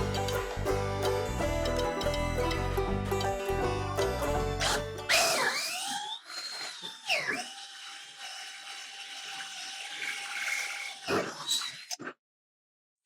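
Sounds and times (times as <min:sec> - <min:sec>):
power drill boring into wood: 0:04.6 - 0:12.0.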